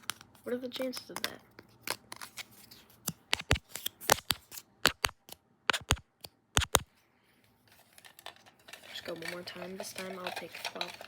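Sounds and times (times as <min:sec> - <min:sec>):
sticks clicking and clacking: 0:03.1 - 0:06.9, 0:08.0 - 0:11.0.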